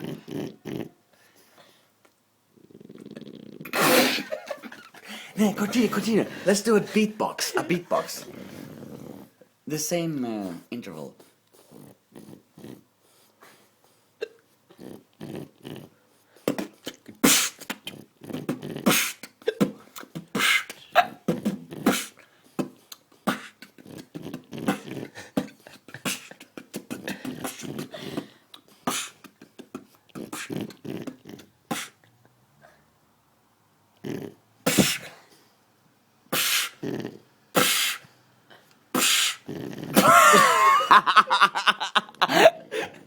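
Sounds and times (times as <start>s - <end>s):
person beatboxing: 16.4s - 32.0s.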